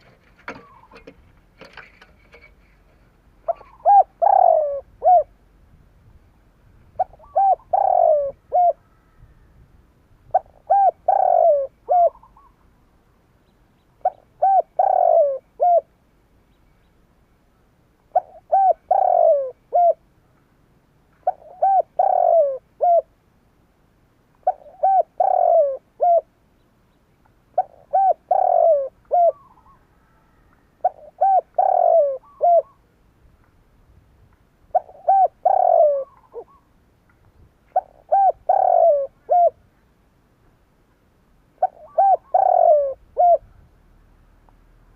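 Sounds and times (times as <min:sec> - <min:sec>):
dove cooing: 0:00.0 - 0:02.5, 0:03.4 - 0:05.4, 0:07.0 - 0:09.3, 0:10.3 - 0:12.6, 0:14.0 - 0:15.9, 0:18.1 - 0:20.0, 0:21.2 - 0:23.1, 0:24.4 - 0:26.3, 0:27.5 - 0:32.9, 0:34.7 - 0:36.7, 0:37.7 - 0:39.6, 0:41.6 - 0:43.6.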